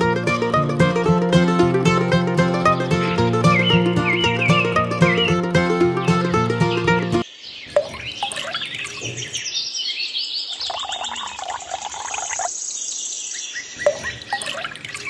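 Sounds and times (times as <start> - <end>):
high-pitched bird-like chirping: 0.0 - 7.2.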